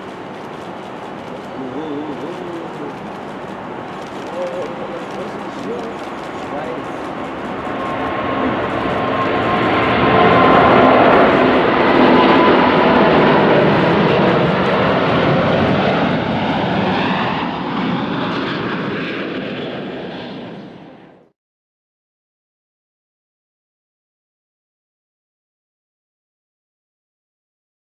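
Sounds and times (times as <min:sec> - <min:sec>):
jet engines roaring at takeoff: 0:00.0 - 0:21.3.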